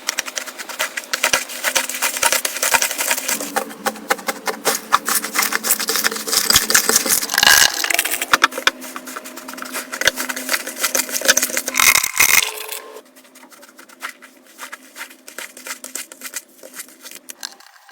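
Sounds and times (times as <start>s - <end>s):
slime crackling and popping: 0.0s - 8.6s.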